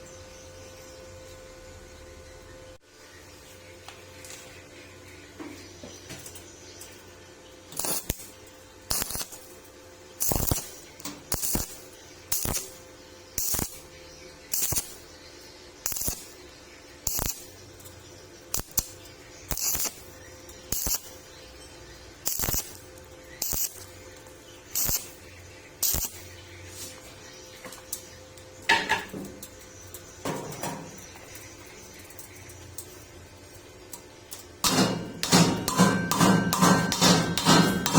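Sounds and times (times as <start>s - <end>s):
welding arc crackling hiss: 7.7s - 15.1s, 15.8s - 17.6s, 18.4s - 21.3s, 22.2s - 27.0s.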